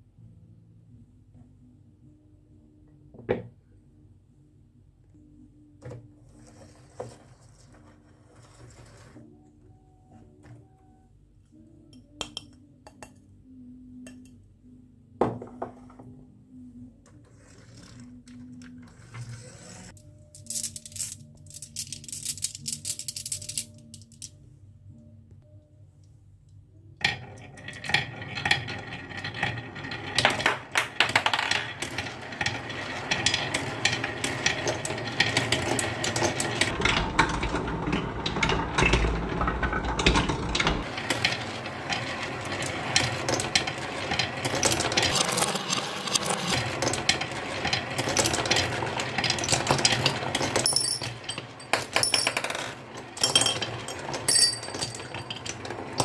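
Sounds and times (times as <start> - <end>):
small hard balls clattering: 39.9 - 56.0.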